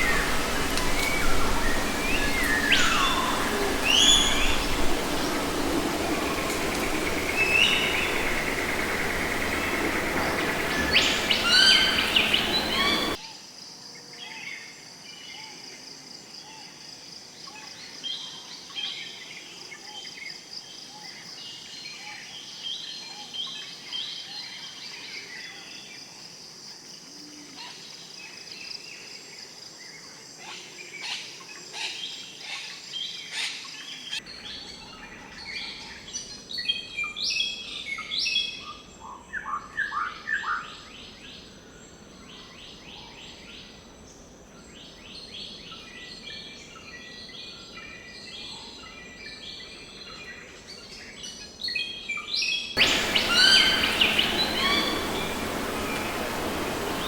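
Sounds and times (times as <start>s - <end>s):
small birds chirping: 0.0s - 13.2s, 52.8s - 57.0s
wild birds calling: 0.0s - 13.2s, 52.8s - 57.0s.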